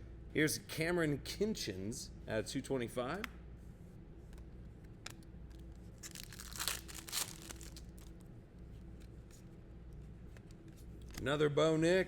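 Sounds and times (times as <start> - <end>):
foil wrapper tearing and crinkling: 6.0 - 8.1.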